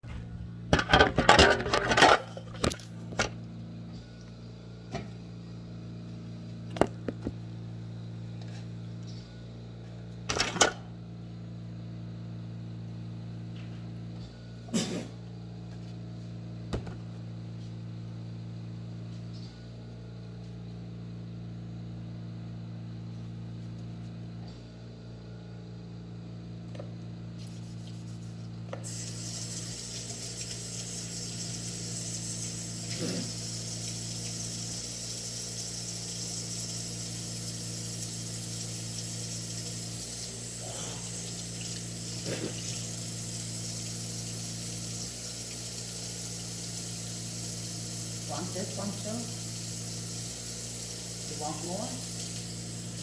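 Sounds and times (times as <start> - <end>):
running water hiss: 28.8 - 53.0.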